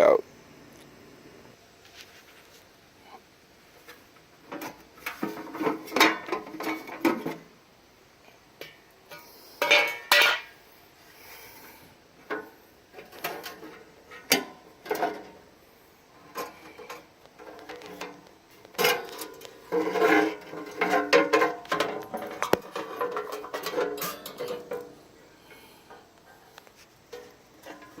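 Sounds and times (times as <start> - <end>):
metal parts clanking and rattling: 3.8 - 7.4, 12.3 - 15.4, 16.3 - 26.4, 27.1 - 28.0.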